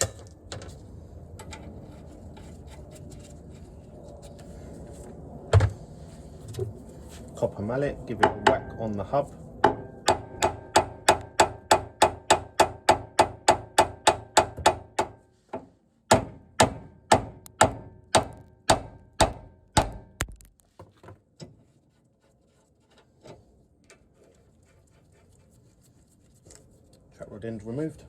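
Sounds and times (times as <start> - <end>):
mallet striking metal hub: 9.6 - 15.2.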